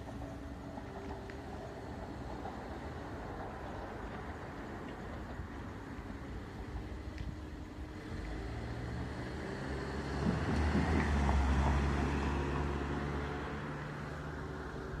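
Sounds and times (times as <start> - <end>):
vehicle engine passing by: 7.6 - 15.0.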